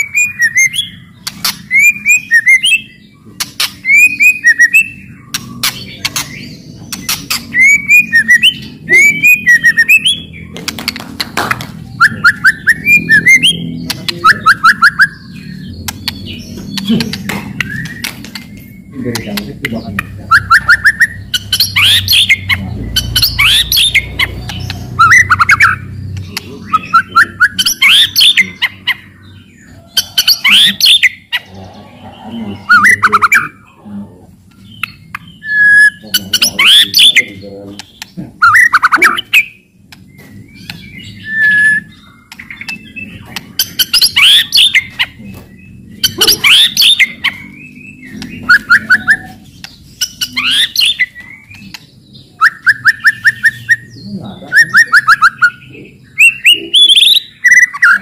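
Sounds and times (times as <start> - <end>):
bird singing rattling clicks and whistles: 0.2 - 2.8, 3.4 - 7.7, 15.8 - 22.3.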